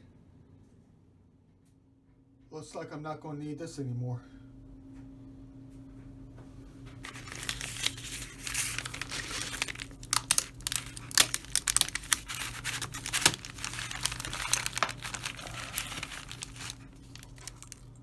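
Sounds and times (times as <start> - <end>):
steady low hum: 0.0 - 18.0
crinkly wrapper crumpling: 7.0 - 18.0.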